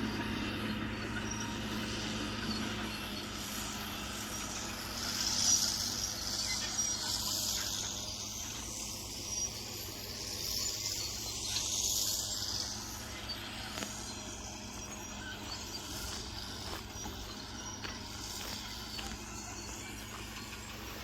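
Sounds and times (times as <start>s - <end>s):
distant bulldozer engine: 0.0s - 21.0s.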